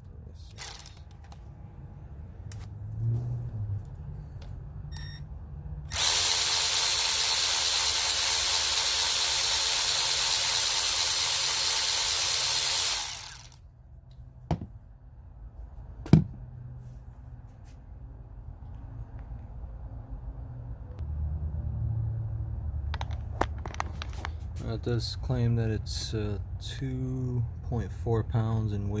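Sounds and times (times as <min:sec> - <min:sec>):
electric ratchet whine: 0:00.5 - 0:01.1, 0:05.9 - 0:13.6.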